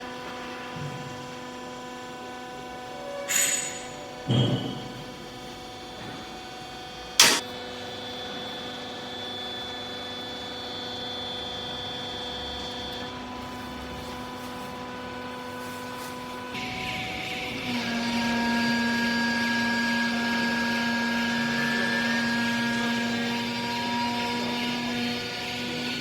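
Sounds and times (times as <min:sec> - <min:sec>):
baling press electric hum: 0:07.2 - 0:07.4
sharp clack: 0:07.2 - 0:07.4.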